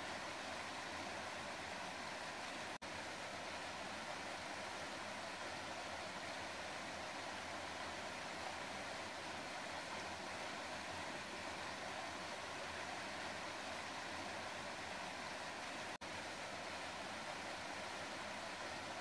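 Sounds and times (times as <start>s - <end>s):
running water rushing: 0.0s - 19.0s.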